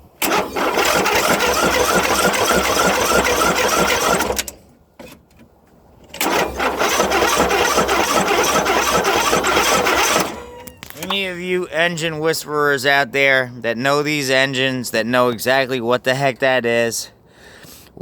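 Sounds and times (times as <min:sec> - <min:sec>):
lawn tractor engine cranking: 0:00.2 - 0:04.7, 0:06.1 - 0:11.4.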